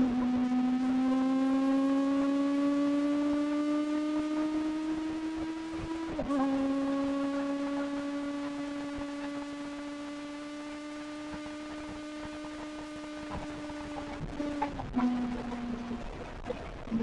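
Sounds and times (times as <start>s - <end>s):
motorcycle engine high revs whine: 0.0s - 17.0s.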